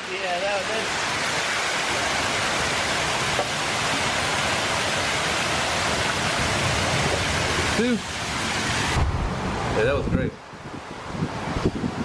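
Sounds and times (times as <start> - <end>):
strong wind on microphone: 8.9 - 12.0.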